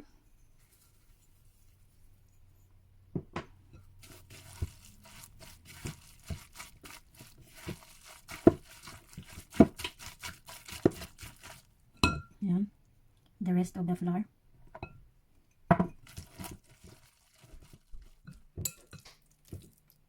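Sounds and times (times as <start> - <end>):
plastic packaging crinkling: 4.0 - 11.7, 16.0 - 18.2.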